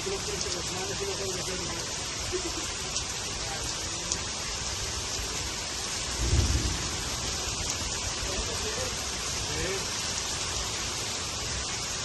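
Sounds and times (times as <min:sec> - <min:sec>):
heavy rain falling: 0:00.0 - 0:12.0
low rumble: 0:06.2 - 0:08.4.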